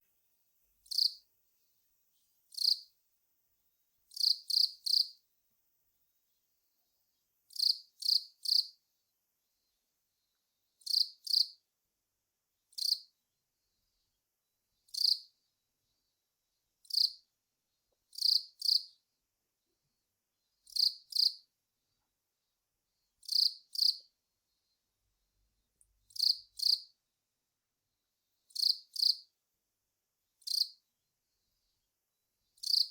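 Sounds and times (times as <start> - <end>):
cricket chirping: 0.8 - 1.2, 2.5 - 2.9, 4.1 - 5.2, 7.5 - 8.8, 10.8 - 11.6, 12.7 - 13.1, 14.9 - 15.3, 16.8 - 17.2, 18.1 - 19.0, 20.6 - 21.4, 23.2 - 24.1, 26.1 - 26.9, 28.5 - 29.3, 30.4 - 30.8, 32.6 - 32.9.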